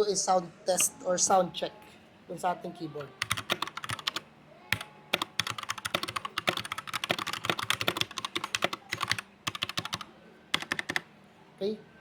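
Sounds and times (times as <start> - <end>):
fast mechanical keyboard typing: 3.1 - 11.1.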